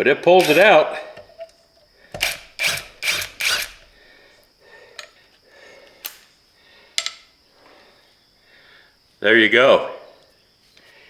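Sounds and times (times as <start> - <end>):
impact driver bursts: 0.2 - 1.4, 2.1 - 4.1.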